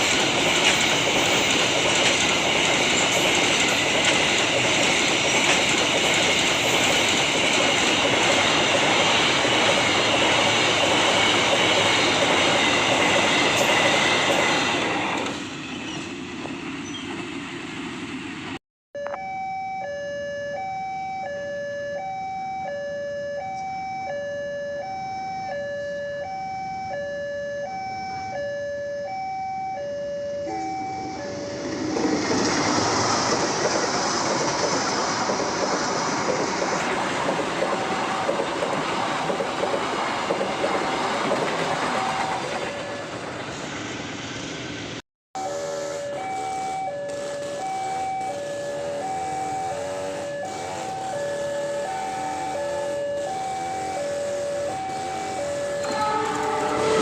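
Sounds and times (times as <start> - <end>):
two-tone level-crossing warning: 0.0 - 18.3, 19.0 - 43.9, 45.4 - 57.0
train wheels rushing on rail: 0.0 - 18.6, 30.8 - 45.0, 45.6 - 57.0.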